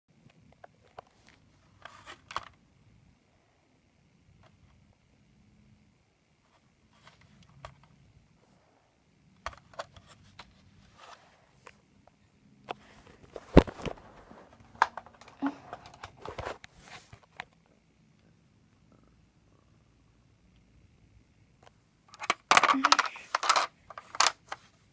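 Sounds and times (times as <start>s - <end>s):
things being handled: 12.7s - 17.6s, 22.1s - 24.7s.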